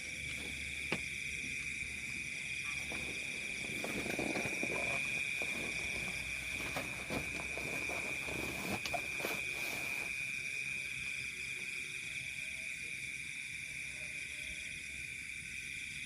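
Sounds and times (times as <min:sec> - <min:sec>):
night insects chorus: 0:00.0 - 0:16.0
rustling and clicking: 0:02.8 - 0:10.1.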